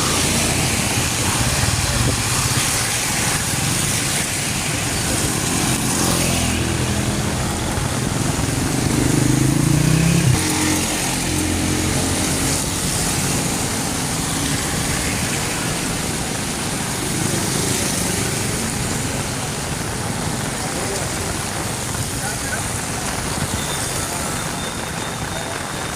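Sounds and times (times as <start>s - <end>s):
rain: 0.0s - 25.9s
street traffic: 0.0s - 25.9s
vehicle engine rising in pitch: 8.6s - 12.4s.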